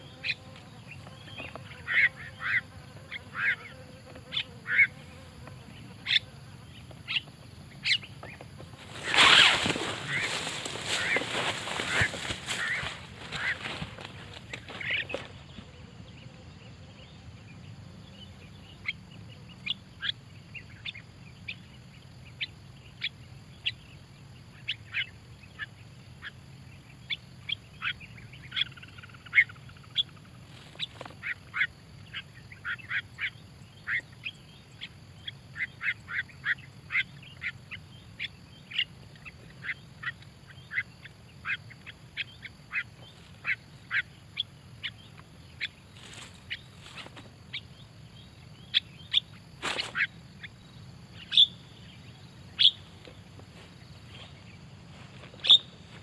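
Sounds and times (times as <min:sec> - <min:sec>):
starlings calling: 0:05.8 - 0:06.3, 0:07.0 - 0:15.7, 0:27.0 - 0:56.0.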